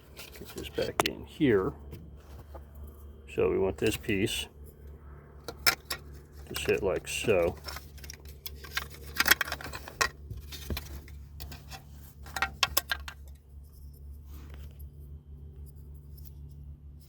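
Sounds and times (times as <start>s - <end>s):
low steady hum: 0.0s - 17.0s
plastic parts clicking and rattling: 5.4s - 13.9s.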